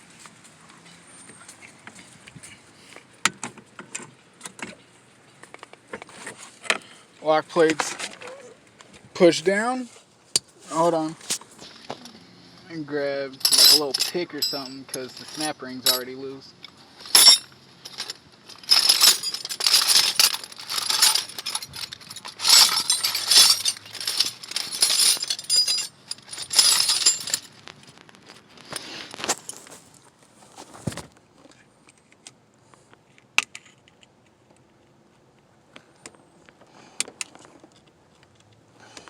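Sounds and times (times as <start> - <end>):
metal tools scraping and clinking: 13.3 - 29.8.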